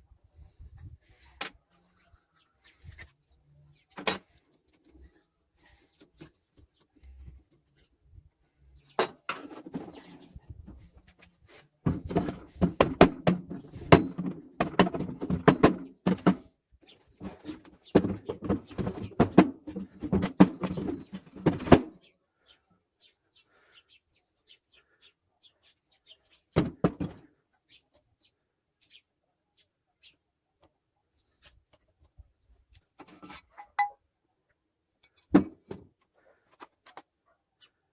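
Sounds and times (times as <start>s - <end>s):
sharp knocks and clicks: 11.9s - 16.5s.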